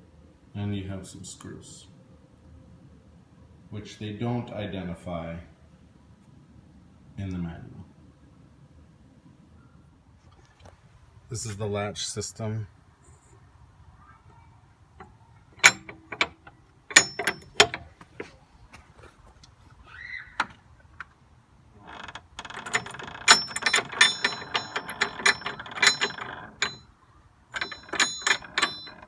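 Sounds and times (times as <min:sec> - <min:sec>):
metal gate latch clicking and rattling: 0:15.0 - 0:18.3, 0:21.8 - 0:26.9, 0:27.5 - 0:29.0.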